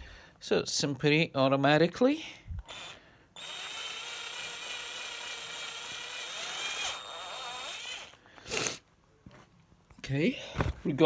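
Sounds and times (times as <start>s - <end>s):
cordless drill motor whine: 2.6s - 8.3s.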